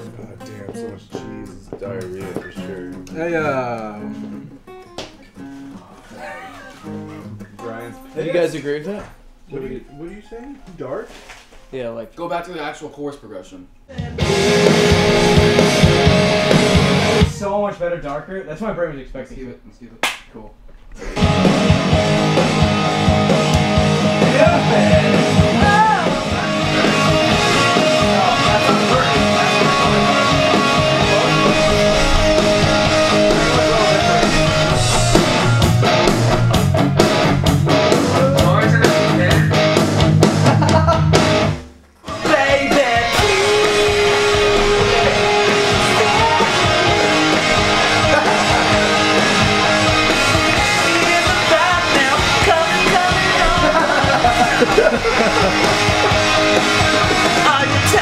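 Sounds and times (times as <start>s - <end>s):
rock music with singing: 13.9s - 17.4s, 21.2s - 58.0s.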